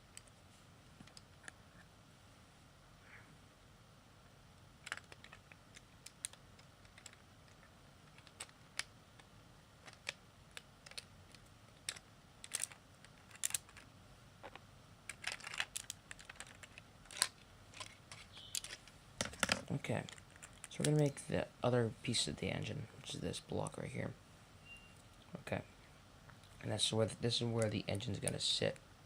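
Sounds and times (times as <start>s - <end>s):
plastic bricks clicking: 4.8s - 20.7s.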